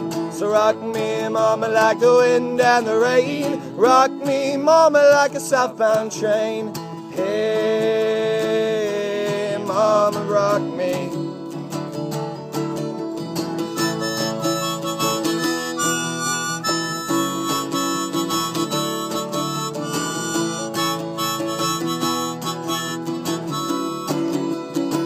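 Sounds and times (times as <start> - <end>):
strummed acoustic guitar: 0.0 - 25.0
harmonica melody: 8.6 - 25.0.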